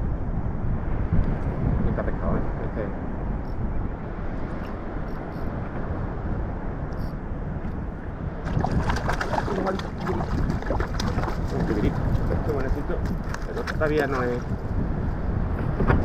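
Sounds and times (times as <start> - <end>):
wind buffeting microphone: 0.0 - 16.0
water lapping around kayak: 8.4 - 15.4.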